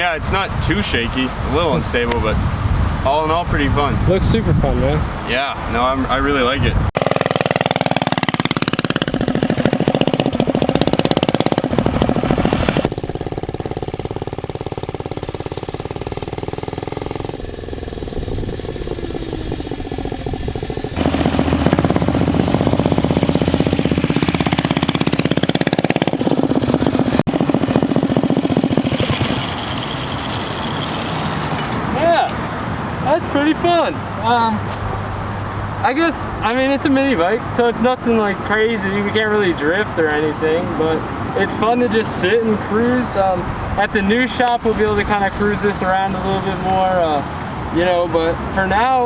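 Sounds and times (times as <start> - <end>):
mini bike engine revving: 7.0 - 32.3, 38.8 - 49.0.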